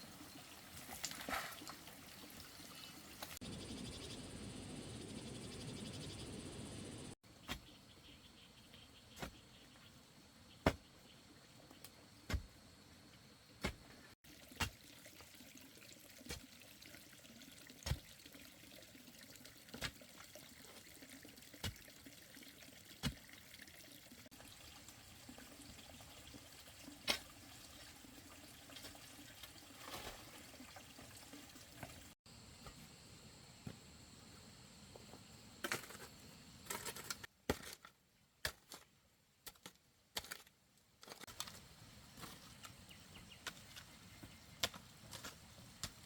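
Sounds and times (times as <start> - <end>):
water splashing in a stream: 0.0 - 3.4, 14.2 - 32.2
faint water trickle: 14.2 - 32.2.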